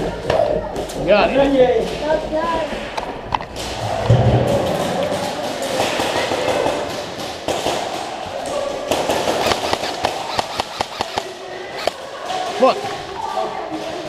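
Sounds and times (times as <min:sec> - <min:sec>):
airsoft guns popping: 0:05.0 - 0:12.0.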